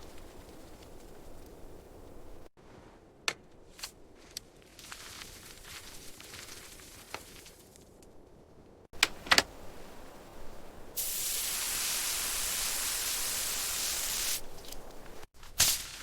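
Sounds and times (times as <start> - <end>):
spray hiss: 11.0 - 14.5.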